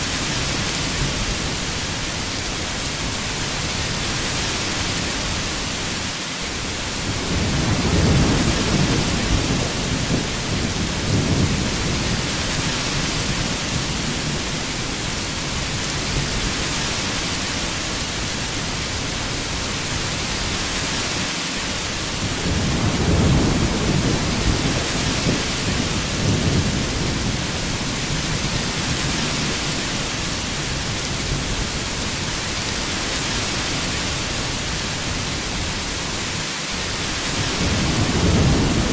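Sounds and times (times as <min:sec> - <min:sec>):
heavy rain hissing: 0:00.0 - 0:38.9
thunder rolling: 0:07.2 - 0:12.4, 0:22.2 - 0:29.5, 0:37.5 - 0:38.9.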